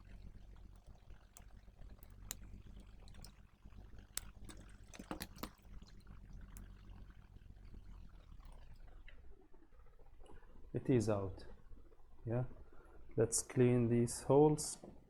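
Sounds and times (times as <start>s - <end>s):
low steady hum: 0.0s - 15.0s
tools clicking and scraping on circuit board: 4.2s - 5.6s.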